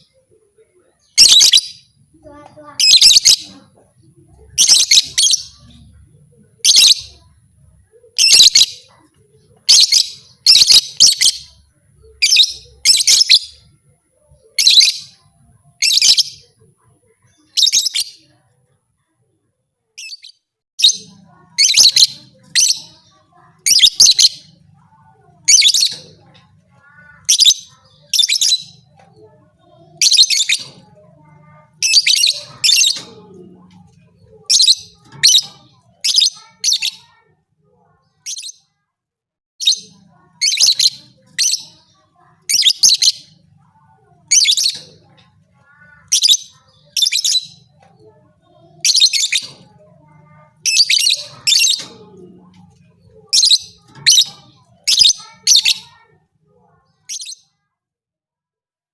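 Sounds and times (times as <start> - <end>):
lovebird chirping: 1.1 - 1.9, 2.8 - 3.6, 4.4 - 6.0, 8.2 - 9.0, 9.7 - 13.6, 39.6 - 43.4.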